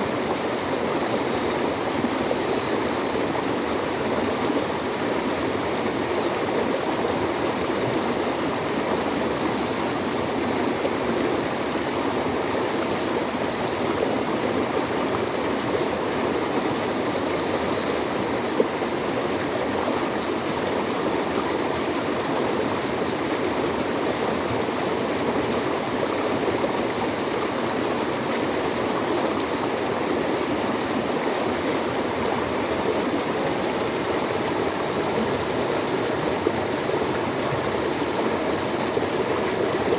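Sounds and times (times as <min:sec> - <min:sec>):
flowing water rushing: 0:00.0 - 0:39.9
faint high chirp: 0:31.7 - 0:32.2, 0:38.2 - 0:39.0.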